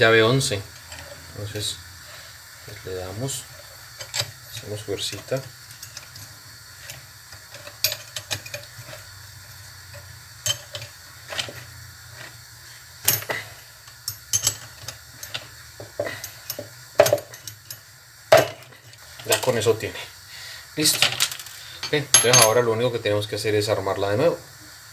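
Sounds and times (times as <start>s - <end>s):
wrench clinking on metal: 4.0s - 9.0s, 10.4s - 11.6s, 13.0s - 17.8s, 21.8s - 22.7s.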